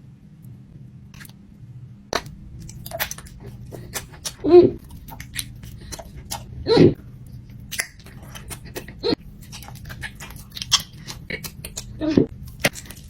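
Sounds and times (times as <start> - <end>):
chewing mouth clicks and smacking: 2.2 - 6.5, 7.2 - 13.0.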